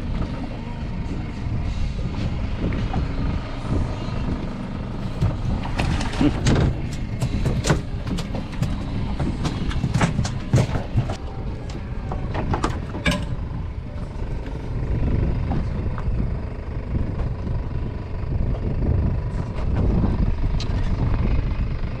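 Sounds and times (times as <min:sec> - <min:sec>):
boat engine rumble: 0:00.0 - 0:22.0
sharp clicks and knocks: 0:05.0 - 0:13.4.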